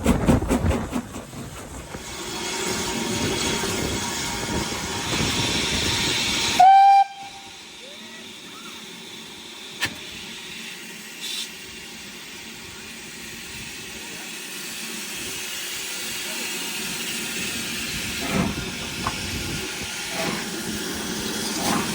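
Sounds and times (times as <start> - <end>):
steam locomotive working hard: 0.0 - 21.9
steady steam hiss: 1.9 - 21.9
steam whistle blast: 6.5 - 8.0.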